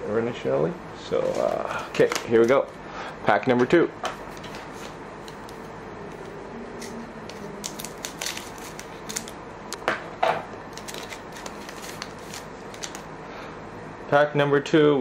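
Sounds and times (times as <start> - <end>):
wrapper crinkling: 6.8 - 9.4, 10.7 - 13.1
wrapper ripping: 7.3 - 9.4, 10.7 - 13.0.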